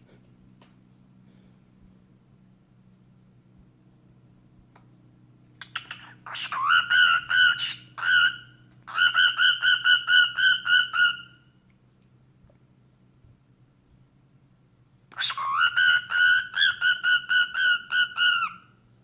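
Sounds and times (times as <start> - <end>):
cockatiel chattering chirps: 5.6 - 11.4, 15.2 - 18.6.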